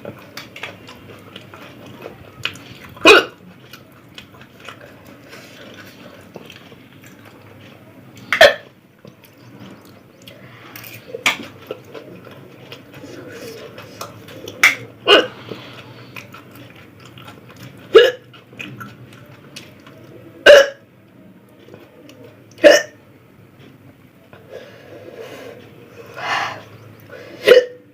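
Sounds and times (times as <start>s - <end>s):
person hiccuping: 3.0s - 3.4s, 8.3s - 8.7s, 15.0s - 15.3s, 17.9s - 18.2s, 20.4s - 20.8s, 22.6s - 23.0s, 27.4s - 27.8s.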